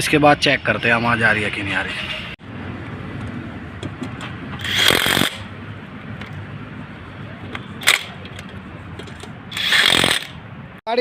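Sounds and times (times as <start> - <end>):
workshop background noise: 0.0 - 11.0
impact wrench hammering: 4.6 - 5.5, 9.5 - 10.4.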